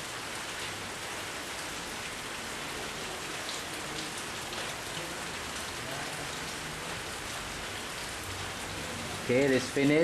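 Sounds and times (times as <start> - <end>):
steady rain-like hiss: 0.0 - 10.0.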